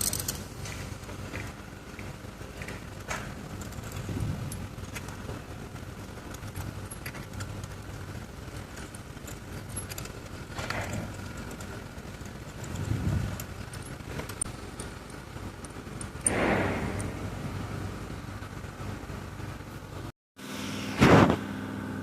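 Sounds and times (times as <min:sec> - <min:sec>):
hand tools clicking and clinking: 0:00.0 - 0:00.8, 0:08.5 - 0:16.4
steady low hum: 0:00.0 - 0:22.0.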